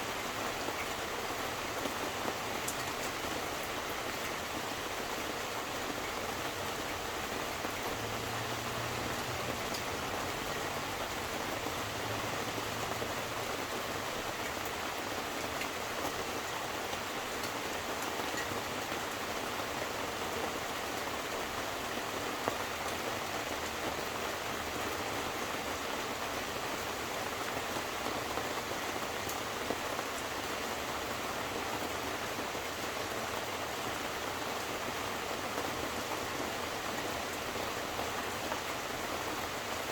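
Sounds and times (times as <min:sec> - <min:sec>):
steady rain falling: 0:00.0 - 0:39.9
raindrops ticking: 0:05.8 - 0:14.8.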